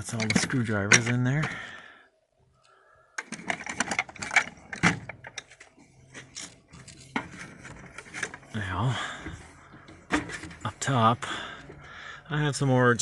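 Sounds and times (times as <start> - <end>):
metal tools rattling in a drawer: 0.0 - 1.6, 3.2 - 8.5.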